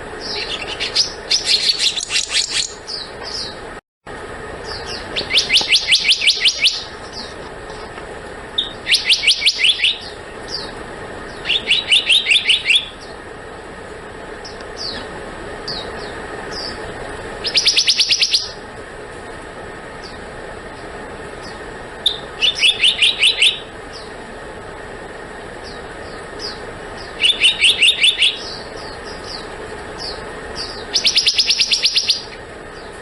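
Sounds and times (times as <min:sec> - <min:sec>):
bird calling high notes: 0:04.6 - 0:07.4, 0:08.6 - 0:13.2, 0:14.4 - 0:18.6, 0:21.5 - 0:24.2, 0:25.6 - 0:32.5.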